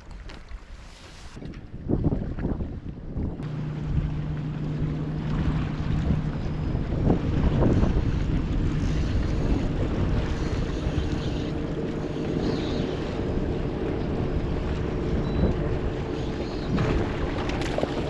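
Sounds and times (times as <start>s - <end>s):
water noise from kayak: 0.0s - 18.0s
wind buffeting microphone: 1.2s - 18.0s.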